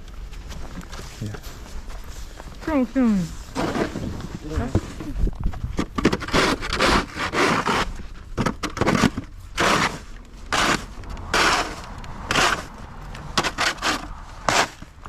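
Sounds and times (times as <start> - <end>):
footsteps crunching in snow: 0.0 - 5.8.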